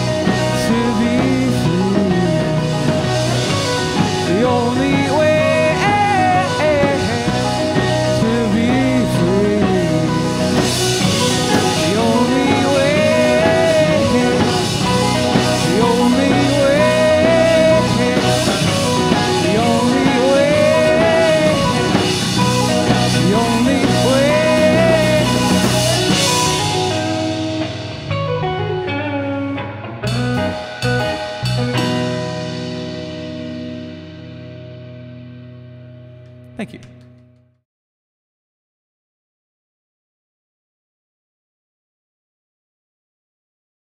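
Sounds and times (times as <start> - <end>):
gliding lead guitar notes: 0.0 - 37.2
rock band playing: 0.0 - 37.3.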